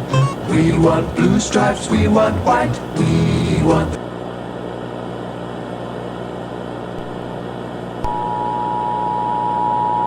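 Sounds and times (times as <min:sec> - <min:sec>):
two-tone alert signal: 0:00.0 - 0:00.4
static hiss: 0:00.0 - 0:04.0
low hum: 0:00.0 - 0:04.1.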